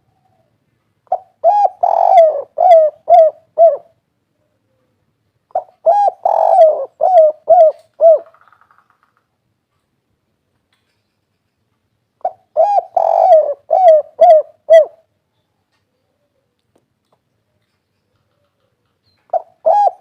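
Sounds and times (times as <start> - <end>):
dove cooing: 0.0 - 4.9, 5.5 - 8.4, 12.2 - 15.1, 18.2 - 20.0.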